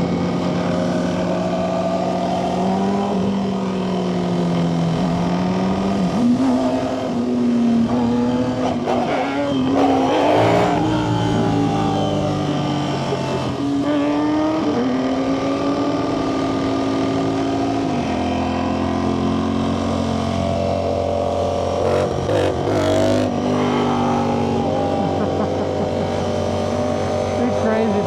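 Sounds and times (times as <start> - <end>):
motorcycle engine running: 18.1 - 28.0.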